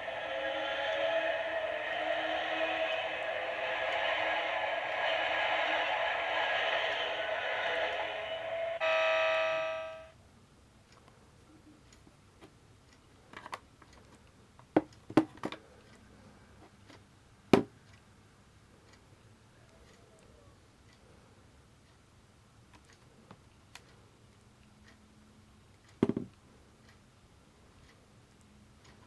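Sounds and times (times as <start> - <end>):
alarm clock sound through small speaker: 0.0 - 10.2
clock ticking faintly: 17.8 - 29.0.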